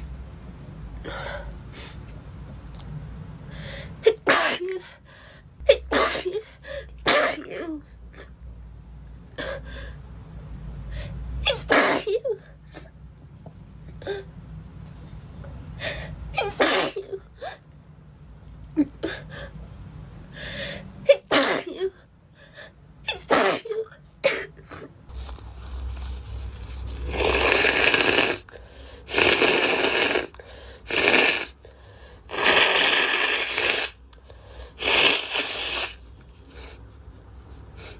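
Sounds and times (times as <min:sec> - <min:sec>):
girl sneezing: 0:04.0 - 0:04.8, 0:05.7 - 0:07.8, 0:11.4 - 0:12.4, 0:16.4 - 0:17.2, 0:21.1 - 0:21.9, 0:23.1 - 0:24.9, 0:34.8 - 0:36.0.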